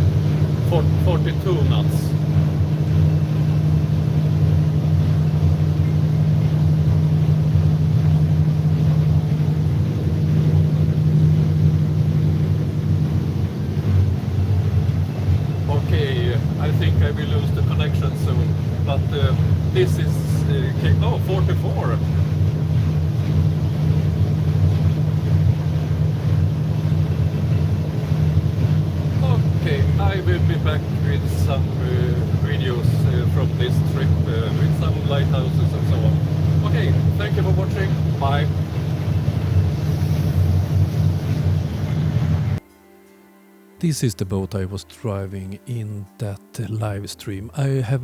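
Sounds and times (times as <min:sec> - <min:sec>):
motorboat engine humming: 0:00.0 - 0:48.0.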